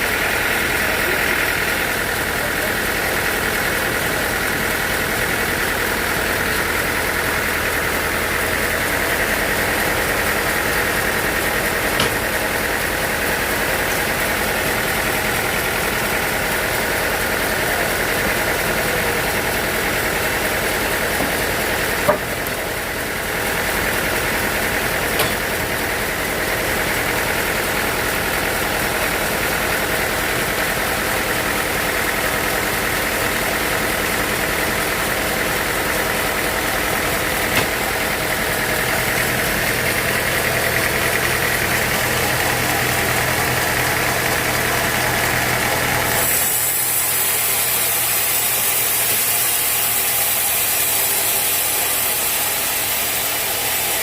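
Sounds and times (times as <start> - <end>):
sawmill machinery drone: 0.0 - 54.0
short sharp knocks: 12.0 - 12.2, 37.5 - 37.8.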